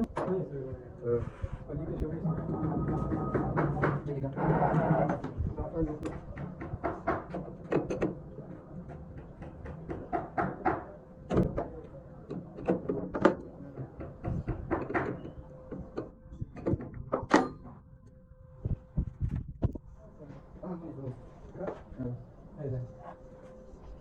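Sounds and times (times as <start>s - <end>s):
irregular knocks and clatter: 2.3s - 4.2s, 12.3s - 17.8s.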